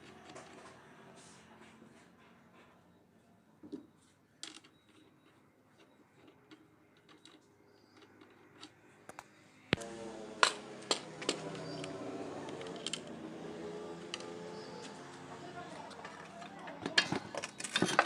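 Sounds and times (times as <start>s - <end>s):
steady hum: 9.5s - 16.6s.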